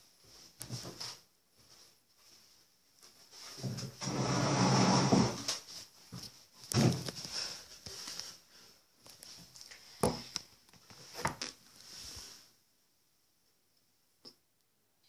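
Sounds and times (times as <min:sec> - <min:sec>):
rustling and scuffling: 0:00.0 - 0:04.1, 0:05.1 - 0:12.6.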